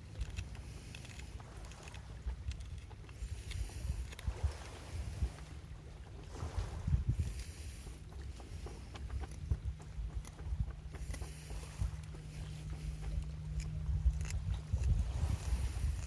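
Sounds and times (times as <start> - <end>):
light clicks and ticks: 0.0 - 4.3, 8.1 - 16.0
wind rumbling on microphone: 0.0 - 16.0.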